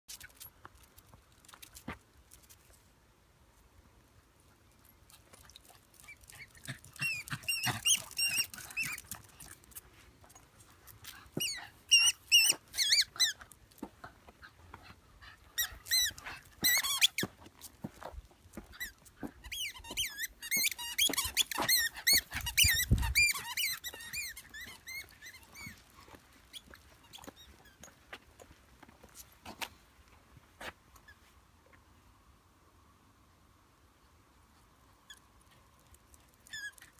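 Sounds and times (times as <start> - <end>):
squeaky toy squeaking: 6.1 - 9.1, 11.4 - 13.4, 15.6 - 17.2, 18.8 - 25.8, 36.4 - 36.9.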